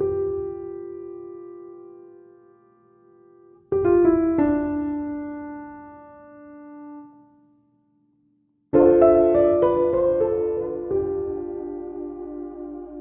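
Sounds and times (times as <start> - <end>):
piano chords ringing: 0.0 - 7.1, 8.8 - 13.0.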